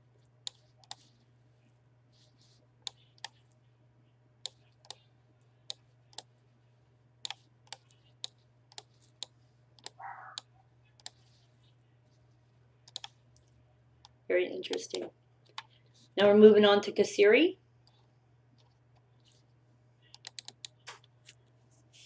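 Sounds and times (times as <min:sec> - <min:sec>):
faint low hum: 0:00.0 - 0:22.0
soft rustle: 0:00.2 - 0:03.7, 0:11.1 - 0:13.6
computer mouse clicking: 0:00.4 - 0:01.1, 0:02.8 - 0:03.5, 0:04.4 - 0:05.0, 0:05.7 - 0:06.3, 0:07.2 - 0:11.4, 0:12.8 - 0:15.8, 0:17.8 - 0:19.1, 0:20.1 - 0:21.1.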